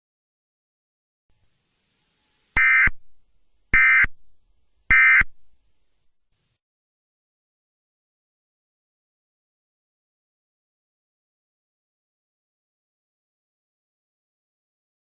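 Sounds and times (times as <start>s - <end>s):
digital data tone bursts: 2.6s - 3.0s, 3.8s - 4.1s, 4.9s - 5.3s.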